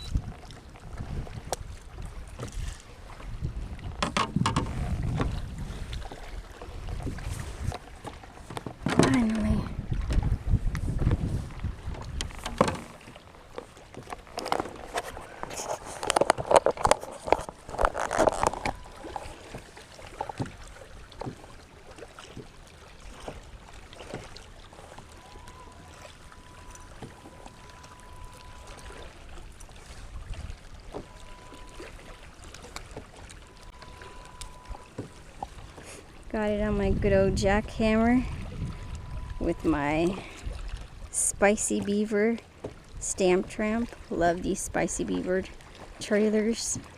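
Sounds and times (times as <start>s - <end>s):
water lapping: 0.0s - 46.9s
water splashing: 0.0s - 46.9s
high-pitched beep: 33.5s - 34.8s, 38.8s - 40.0s.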